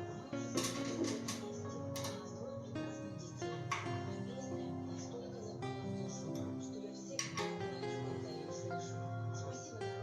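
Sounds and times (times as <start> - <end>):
instrumental music with held notes: 0.0 - 10.0.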